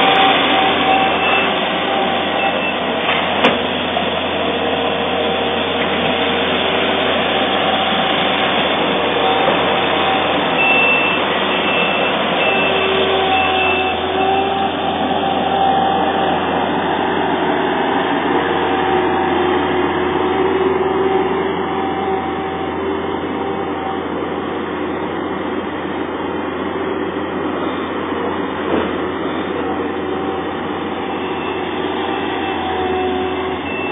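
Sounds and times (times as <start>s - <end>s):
loader engine and hydraulics: 0.0s - 33.9s
faint high beep: 0.1s - 1.6s, 10.1s - 14.6s, 31.1s - 32.6s, 33.6s - 33.9s.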